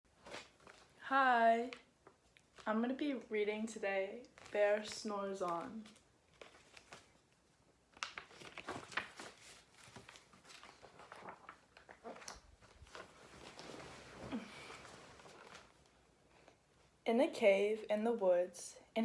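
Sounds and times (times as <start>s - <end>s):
paper rustling: 0.1s - 1.0s, 4.2s - 16.4s.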